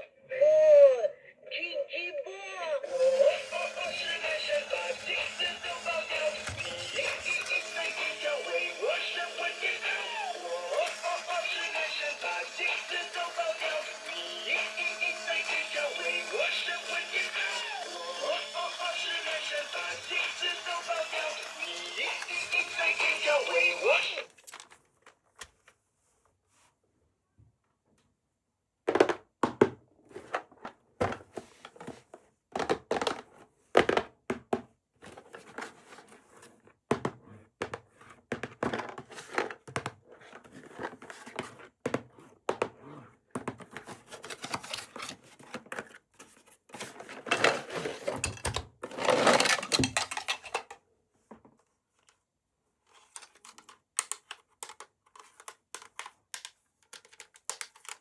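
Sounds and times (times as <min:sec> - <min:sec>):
plastic and cardboard crinkling: 0:24.2 - 0:26.4
plastic packaging clicks and knocks: 0:49.4 - 0:50.8, 0:53.2 - 0:58.0.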